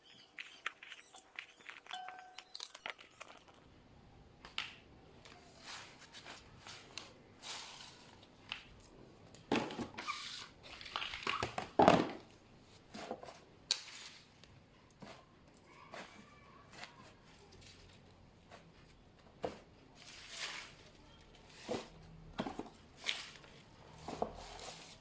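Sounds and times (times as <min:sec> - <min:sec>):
plastic packaging crinkling: 0:00.2 - 0:03.7, 0:10.0 - 0:12.2
containers clicking and knocking: 0:10.9 - 0:12.3.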